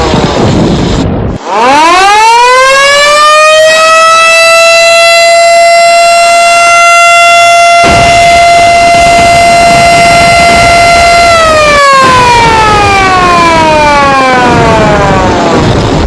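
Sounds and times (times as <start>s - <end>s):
rushing noise: 0.0s - 2.5s, 7.7s - 16.0s
siren wailing: 1.4s - 16.0s.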